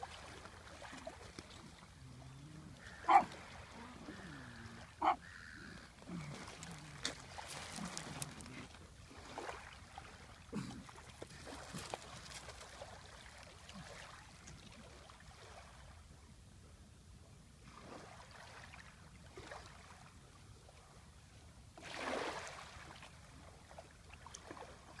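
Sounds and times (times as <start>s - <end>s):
dog grunting and snuffling: 6.0s - 8.8s.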